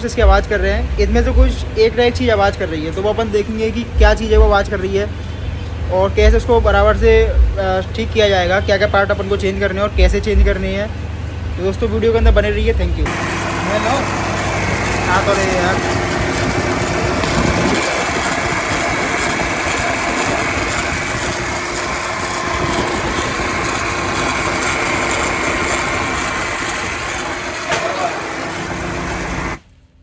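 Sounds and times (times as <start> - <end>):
diesel engine running: 0.0 - 8.5, 10.0 - 29.6
belt-driven part whine: 13.0 - 29.6.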